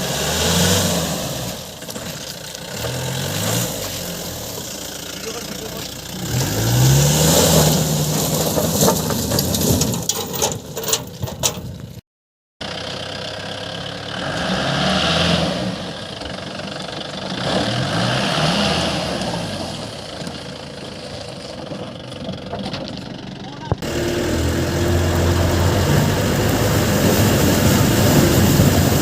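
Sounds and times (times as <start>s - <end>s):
diesel engine revving: 0.0s - 9.9s, 12.6s - 29.0s
knocks and rattles: 7.6s - 12.0s.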